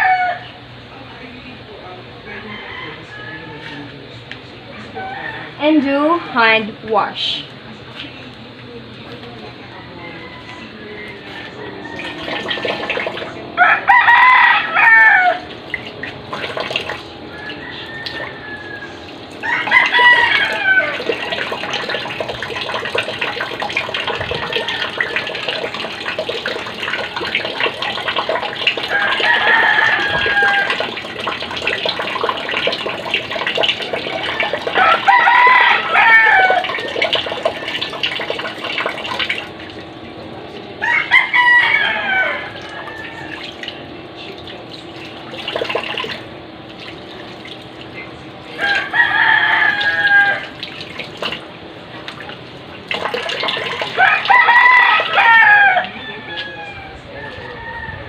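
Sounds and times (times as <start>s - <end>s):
rooster crowing: 0.0s - 0.6s, 2.2s - 4.0s, 4.7s - 6.4s, 9.6s - 15.6s, 16.3s - 39.5s, 40.8s - 44.0s, 48.5s - 51.4s, 53.0s - 58.0s
tap water running: 11.5s - 56.5s.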